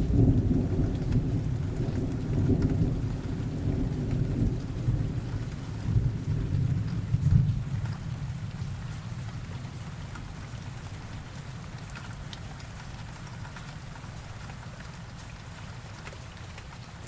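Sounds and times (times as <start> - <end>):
steady rainfall: 0.0 - 17.0.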